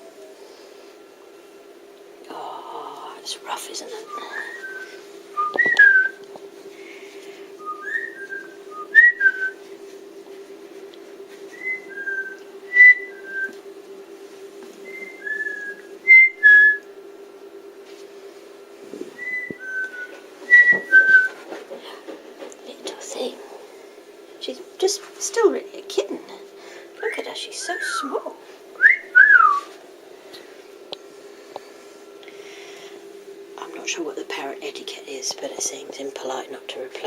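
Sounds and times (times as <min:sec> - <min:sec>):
steady low hum: 0:00.0 - 0:37.0
parrot whistling: 0:04.1 - 0:06.2, 0:07.6 - 0:09.6, 0:11.6 - 0:13.5, 0:14.8 - 0:16.8, 0:19.2 - 0:21.3, 0:27.0 - 0:29.7.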